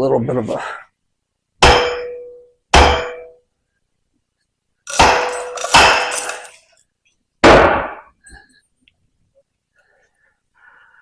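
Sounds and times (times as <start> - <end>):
sledgehammer clanging on metal: 1.6 - 3.4, 4.9 - 6.6.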